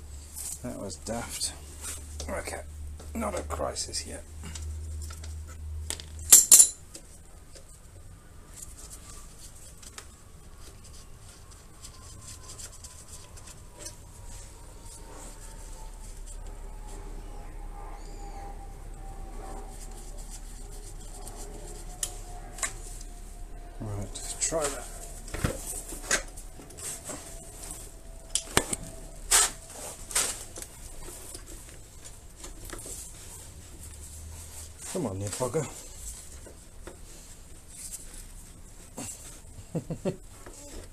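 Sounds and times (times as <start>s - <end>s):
small metal parts clicking and scraping: 4.5s - 7.2s
metal clinks and knocks: 5.9s - 7.0s.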